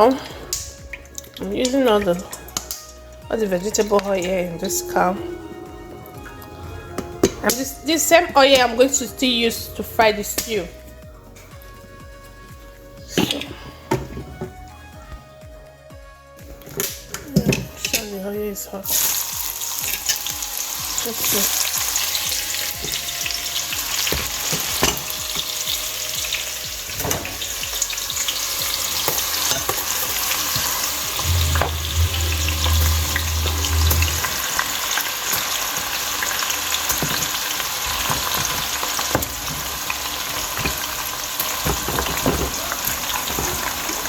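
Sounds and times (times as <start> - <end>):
low hum: 4.2 - 7.4, 31.1 - 35.1
meat sizzling in hot oil: 18.8 - 44.0.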